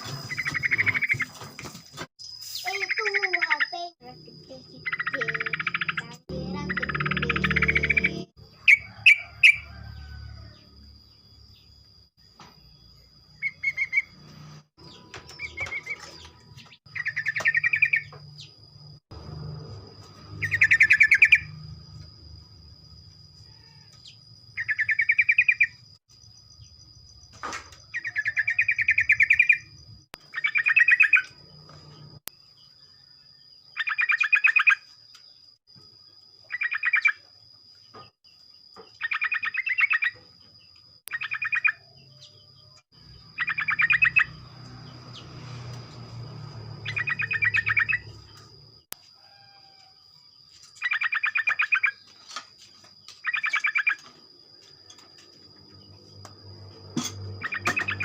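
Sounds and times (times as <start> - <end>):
bird singing bubbling phrases: 2.6 - 8.8.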